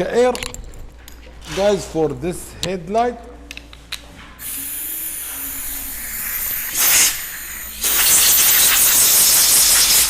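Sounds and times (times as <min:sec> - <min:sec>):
compressed air blowing: 0:04.4 - 0:10.0.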